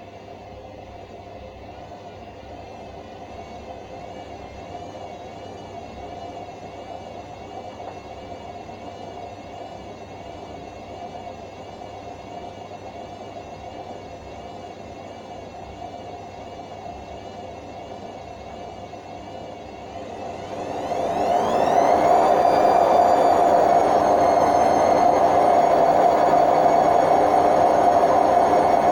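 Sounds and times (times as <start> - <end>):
washing machine spinning: 19.5 - 28.9.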